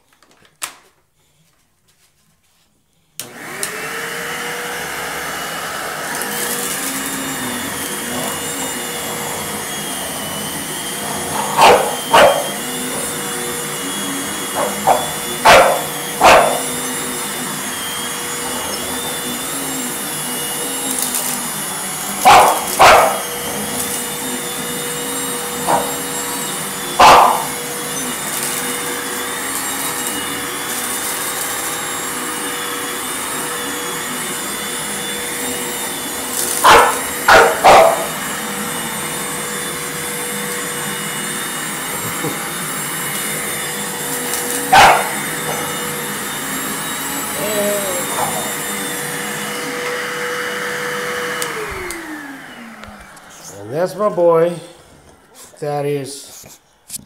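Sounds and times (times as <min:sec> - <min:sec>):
vacuum cleaner droning: 0:03.1 - 0:57.0
dog barking: 0:11.2 - 0:12.6, 0:14.5 - 0:16.7, 0:22.2 - 0:23.4, 0:25.7 - 0:25.9, 0:27.0 - 0:27.5, 0:36.6 - 0:38.2, 0:44.7 - 0:45.7.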